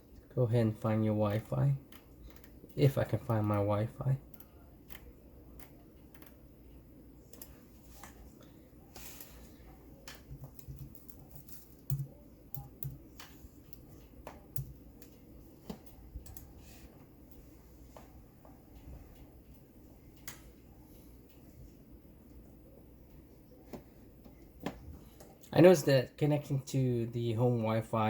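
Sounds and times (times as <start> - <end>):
laptop keyboard typing: 10.0 - 16.5.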